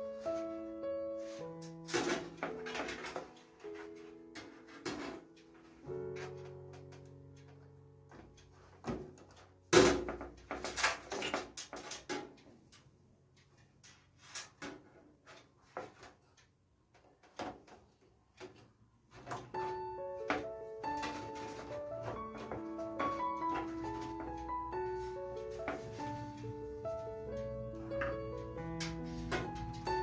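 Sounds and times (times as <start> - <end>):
computer hardware clicks and knocks: 6.0 - 12.9.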